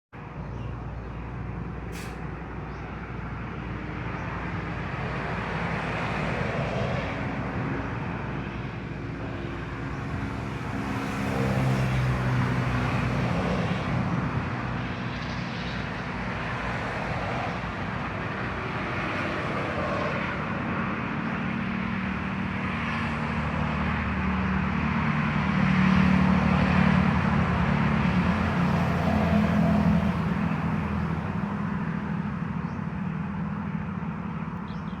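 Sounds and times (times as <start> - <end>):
traffic noise: 0.1 - 35.0
steady engine hum: 0.2 - 35.0.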